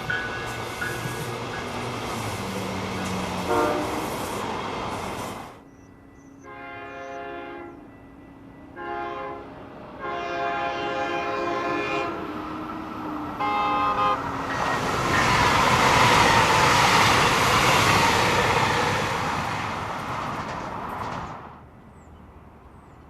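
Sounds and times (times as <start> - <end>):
passing train rolling: 0.0 - 23.0
train horn blasts: 3.0 - 4.4, 6.3 - 8.0, 8.7 - 12.3, 13.3 - 14.9.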